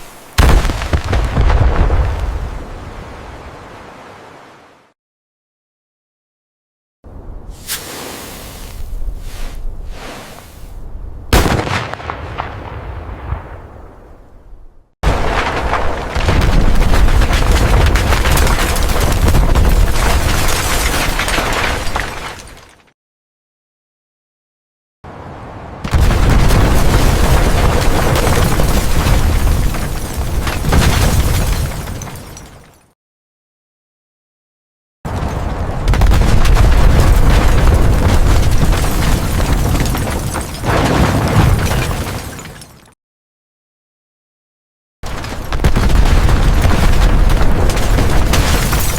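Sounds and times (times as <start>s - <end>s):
explosion rumble with crackles: 0.0s - 3.0s, 10.8s - 22.1s, 25.8s - 32.3s, 35.1s - 42.2s, 45.0s - 48.9s
explosion with deep rumble: 0.4s - 2.8s, 11.3s - 14.2s, 35.3s - 40.0s.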